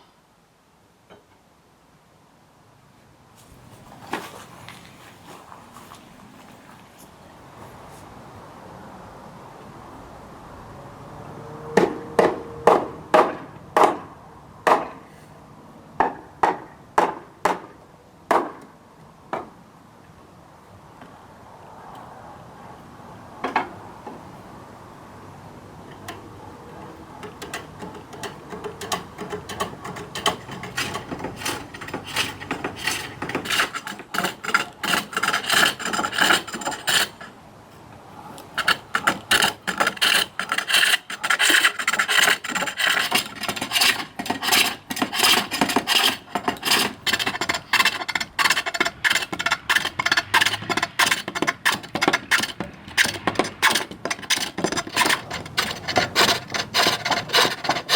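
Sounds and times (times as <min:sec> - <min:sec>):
lathe tool rasping wood: 0:28.9 - 0:37.3, 0:38.6 - 0:57.9.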